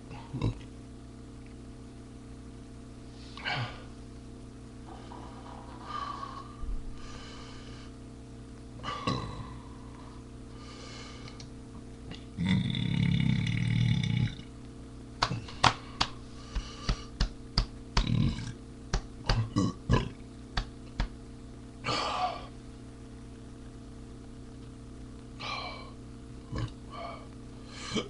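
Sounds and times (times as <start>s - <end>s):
loud drawn-out burp: 8.8s - 9.6s, 12.4s - 14.5s, 18.0s - 18.6s, 19.4s - 20.2s, 26.5s - 26.8s.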